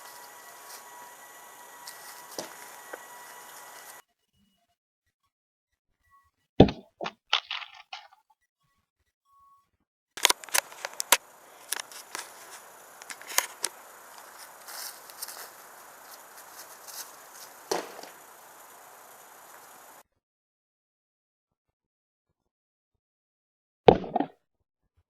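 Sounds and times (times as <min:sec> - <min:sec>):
plastic cube hitting hard surface: 0:06.6 - 0:08.1
light clicks and taps: 0:10.2 - 0:20.0.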